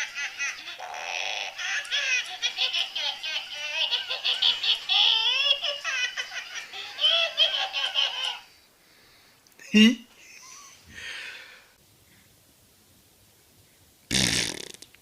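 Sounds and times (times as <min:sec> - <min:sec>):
baby laughing: 0:00.0 - 0:08.5.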